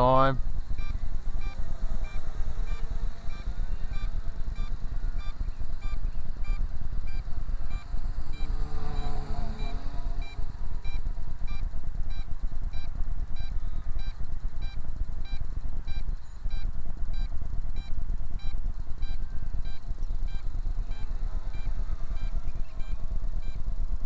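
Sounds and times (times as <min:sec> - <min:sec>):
transmitter beeping: 0:00.8 - 0:16.6.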